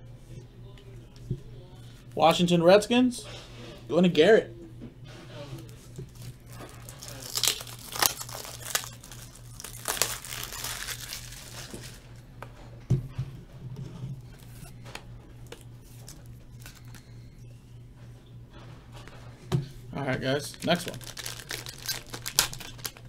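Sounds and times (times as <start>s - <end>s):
plastic packaging crinkling: 5.7s - 12.2s, 15.5s - 17.1s, 20.4s - 23.0s.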